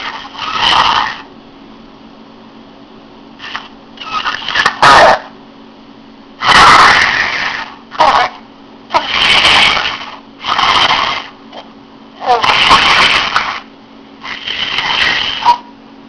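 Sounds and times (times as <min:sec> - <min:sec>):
person snoring over phone: 0:00.0 - 0:01.3, 0:06.4 - 0:11.4, 0:12.2 - 0:15.6
steady low hum: 0:00.0 - 0:16.0.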